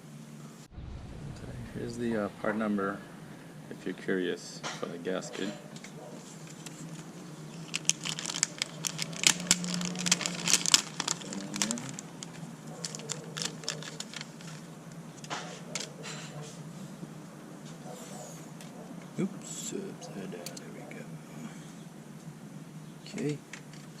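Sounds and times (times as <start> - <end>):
faint low hum: 0.0 - 15.2
plastic packaging crinkling: 6.2 - 16.2.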